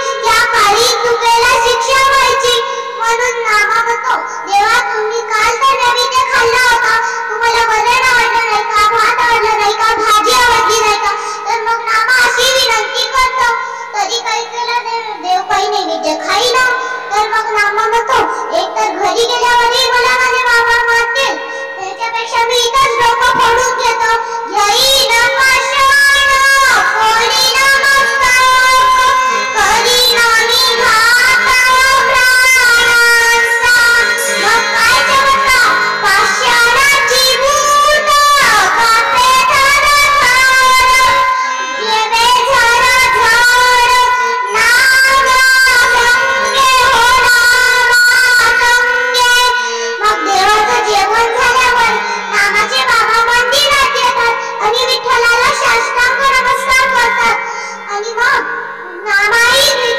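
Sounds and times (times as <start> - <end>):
child singing with vibrato: 0.0 - 59.9
harmonium: 0.0 - 59.9
held accompanying drone note: 18.1 - 59.9.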